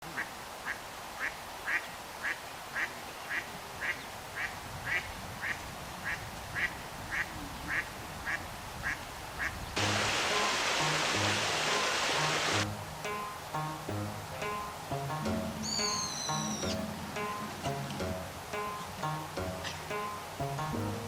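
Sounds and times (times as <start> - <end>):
duck quacking: 1.2 - 12.6
music: 9.8 - 21.0.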